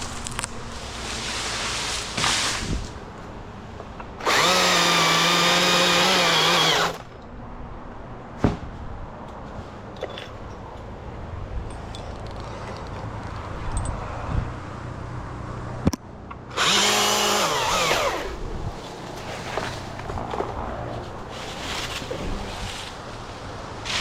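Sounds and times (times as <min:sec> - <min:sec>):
chainsaw revving: 0:04.2 - 0:07.1, 0:16.5 - 0:18.4.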